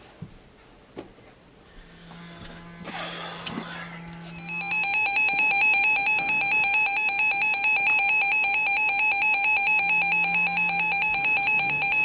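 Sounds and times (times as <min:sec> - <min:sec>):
fast pulsed electronic beeping: 0:04.4 - 0:12.0.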